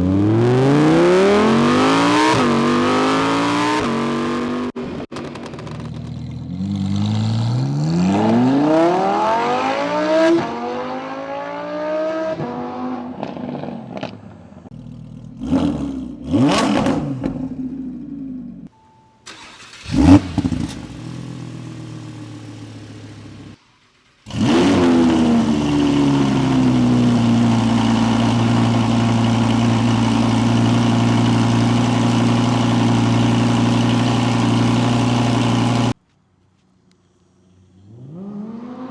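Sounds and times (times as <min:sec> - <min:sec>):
car engine revving: 0:00.0 - 0:18.4, 0:19.3 - 0:36.0
engine starting: 0:19.2 - 0:21.0
car engine idling: 0:19.3 - 0:36.0.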